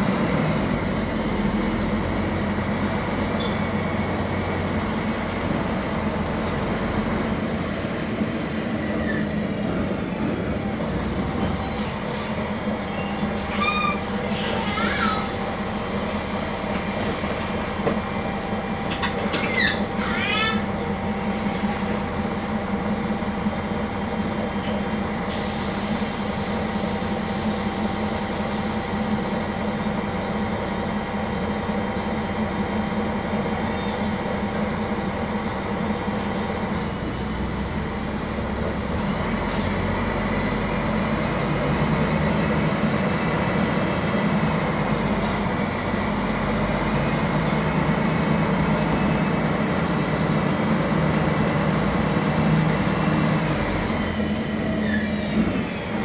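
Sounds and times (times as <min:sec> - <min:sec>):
bus engine running: 0:00.0 - 0:56.0
high squeals: 0:10.8 - 0:15.4, 0:19.2 - 0:20.7
air hissing: 0:14.0 - 0:17.5.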